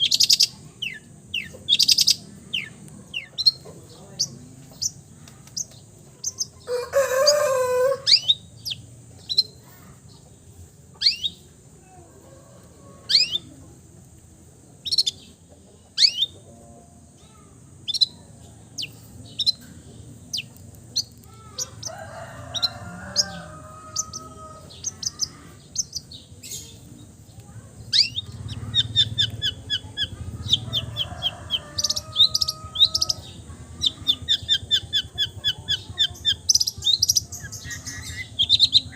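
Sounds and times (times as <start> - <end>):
bird singing whistled notes: 11.0 - 11.4, 16.0 - 16.4
loud harsh bird call: 27.9 - 38.9.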